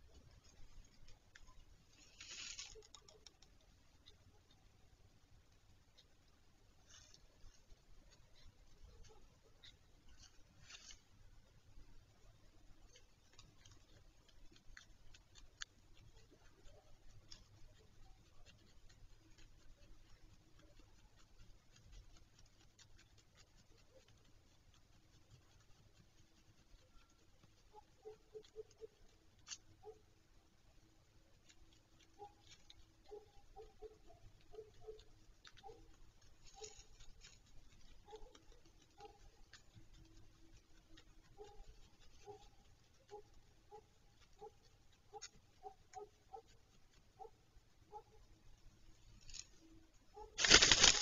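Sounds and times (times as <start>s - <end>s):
faint clicks: 0.0s - 4.8s
faint animal calls: 0.0s - 30.5s, 31.9s - 51.0s
faint scratching and clicking: 0.0s - 51.0s.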